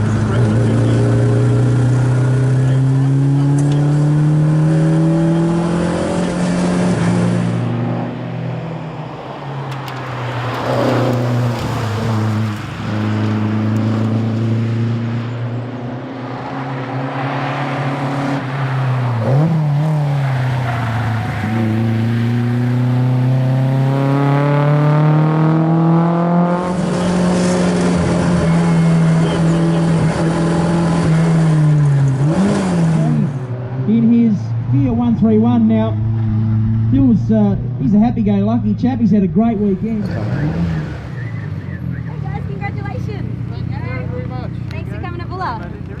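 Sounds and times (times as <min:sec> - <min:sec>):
rally car engine revving: 0:00.0 - 0:44.8.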